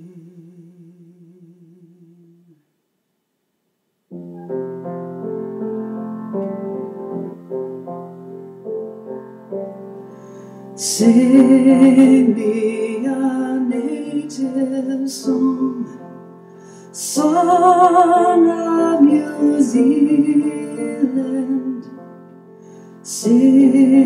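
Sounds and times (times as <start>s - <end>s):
person singing with vibrato: 0.0s - 2.8s, 10.8s - 24.0s
piano interlude: 4.1s - 24.0s.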